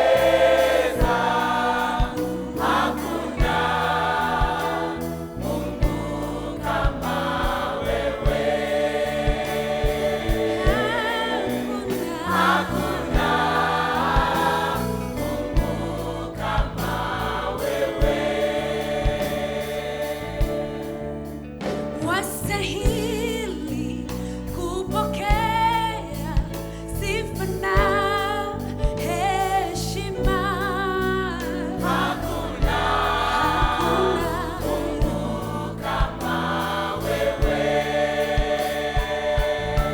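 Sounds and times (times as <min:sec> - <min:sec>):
steady drumbeat: 0:00.0 - 0:23.3, 0:31.7 - 0:39.9
choir singing: 0:00.0 - 0:23.8, 0:31.0 - 0:39.9
bass: 0:00.0 - 0:39.9.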